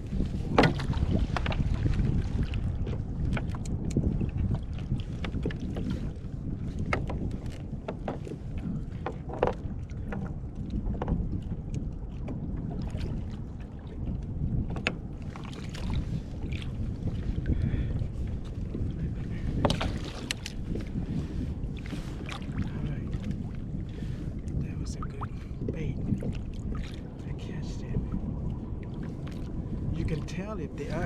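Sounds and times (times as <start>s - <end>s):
wind rumbling on microphone: 0.0s - 31.0s.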